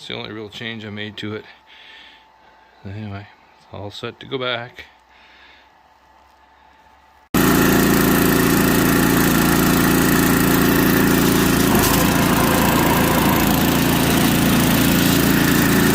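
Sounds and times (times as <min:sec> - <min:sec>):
snowblower engine running: 0:07.4 - 0:15.9.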